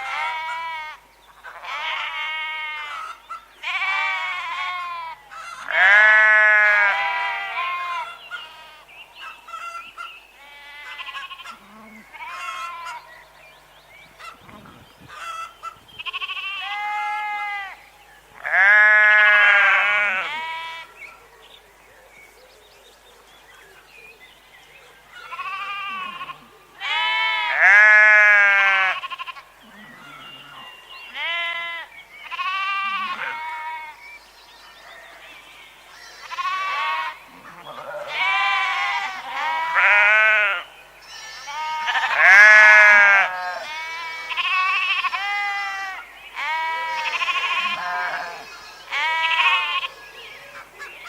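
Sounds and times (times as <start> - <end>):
sheep bleating: 0.0 - 8.9, 10.4 - 13.1, 14.2 - 17.8, 18.4 - 21.0, 25.2 - 34.0, 35.9 - 49.9.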